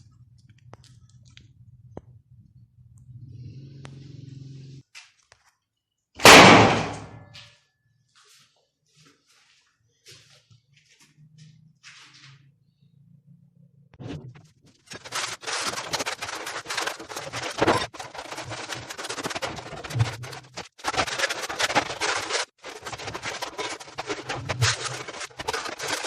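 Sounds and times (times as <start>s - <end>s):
harsh crackling scraping: 14.8s - 26.0s.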